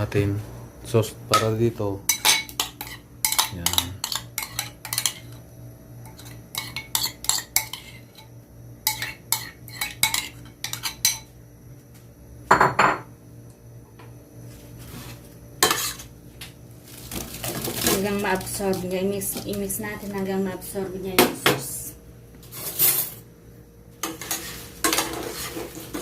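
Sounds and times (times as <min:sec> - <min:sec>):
utensil scraping against bowl: 0:02.1 - 0:05.4, 0:06.0 - 0:08.3, 0:08.9 - 0:11.2, 0:14.8 - 0:16.1, 0:24.0 - 0:26.0.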